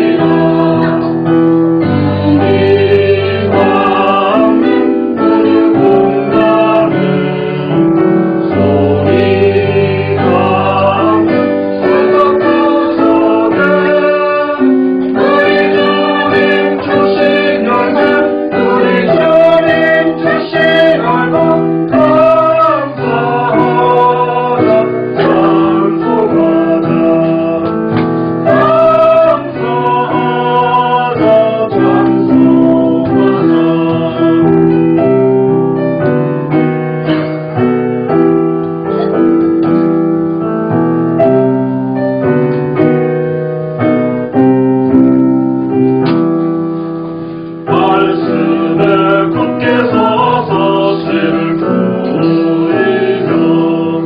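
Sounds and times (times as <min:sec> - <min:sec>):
choir singing a hymn: 0:00.0 - 0:36.2, 0:47.6 - 0:54.0
piano accompaniment: 0:00.0 - 0:54.0.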